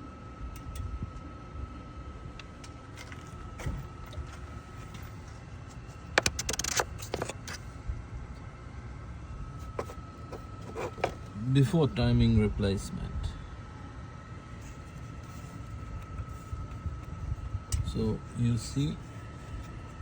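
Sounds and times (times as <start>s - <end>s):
car engine hum with whine: 0.0s - 20.0s
sharp metallic clicks and rattles: 6.2s - 7.6s.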